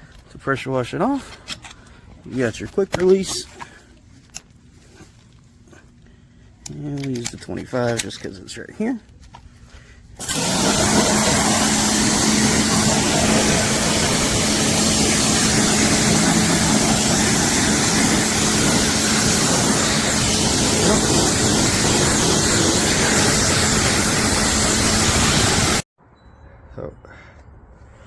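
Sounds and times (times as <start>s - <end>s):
motor hum: 10.2s - 25.8s
pressure washer water jet hiss: 10.2s - 25.8s.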